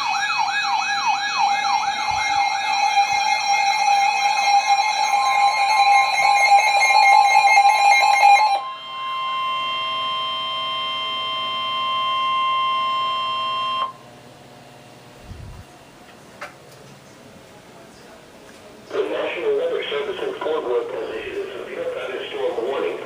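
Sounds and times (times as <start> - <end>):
two-tone attention signal: 1.6 - 14.0.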